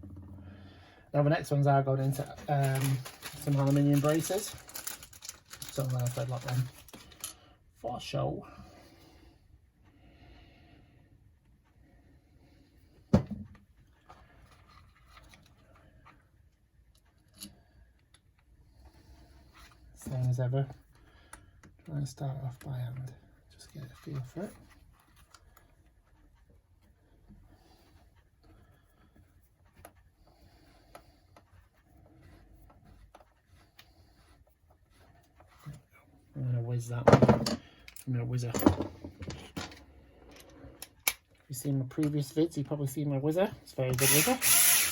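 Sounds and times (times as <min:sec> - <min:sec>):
tool knocking on workbench: 0:13.1 - 0:13.5
screws and tools clicking: 0:43.9 - 0:44.9.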